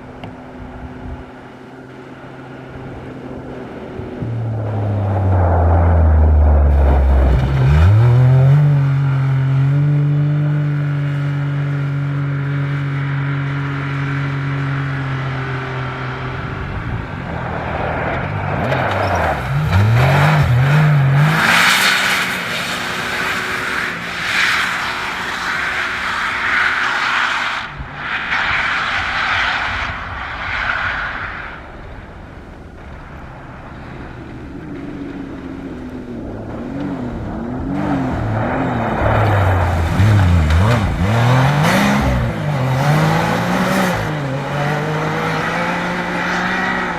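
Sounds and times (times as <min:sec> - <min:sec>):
race car engine revving: 0:15.0 - 0:27.9, 0:33.8 - 0:46.9.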